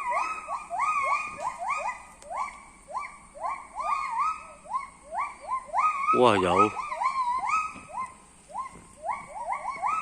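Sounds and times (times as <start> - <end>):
gibbon whooping: 0.0 - 10.0.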